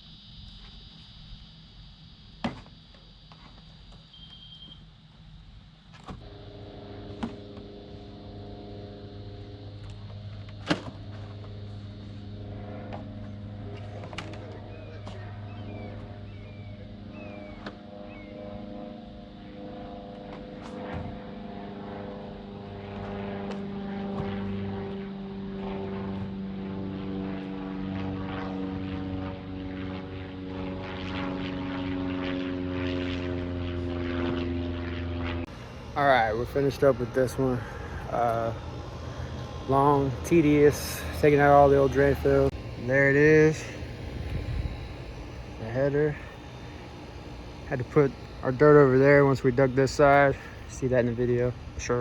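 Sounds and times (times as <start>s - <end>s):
excavator diesel engine working: 35.5s - 52.0s.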